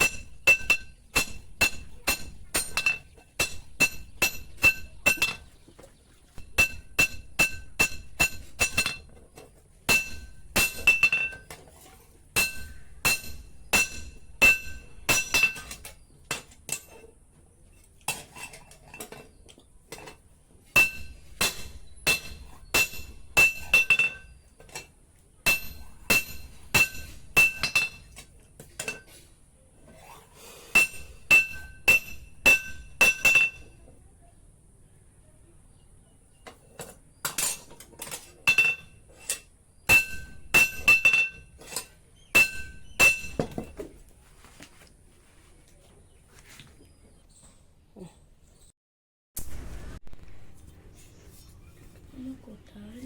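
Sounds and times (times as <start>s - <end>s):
hammer striking steel on anvil: 0.0s - 5.5s, 6.4s - 9.1s, 9.9s - 11.5s, 12.4s - 15.9s, 20.8s - 24.3s, 25.4s - 28.2s, 30.7s - 33.8s, 39.9s - 43.8s.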